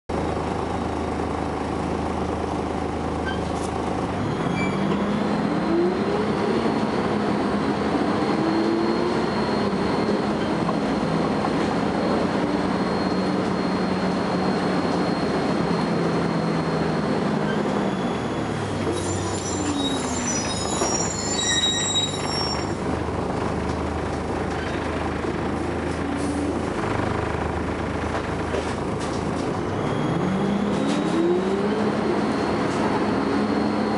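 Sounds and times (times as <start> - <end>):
bus diesel engine running: 0.1 - 33.9
high squealing tones: 4.4 - 22.8
high-pitched whine: 7.8 - 22.8.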